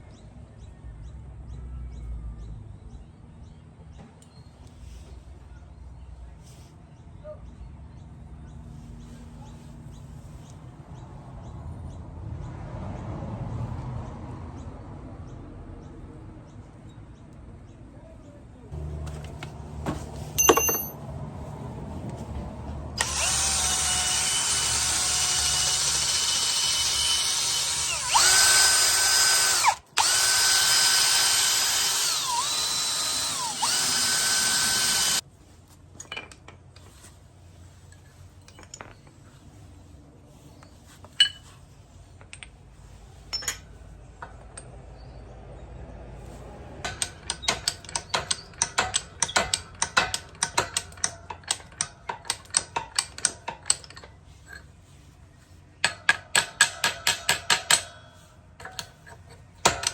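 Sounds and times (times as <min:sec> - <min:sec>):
hand work clicks and knocks: 0:18.8 - 0:21.0, 0:46.8 - 0:54.7, 0:55.8 - 0:59.9
power tool motor whining: 0:23.0 - 0:35.2
ratchet clicks: 0:23.0 - 0:35.2, 0:46.8 - 0:54.1, 0:58.6 - 0:59.9.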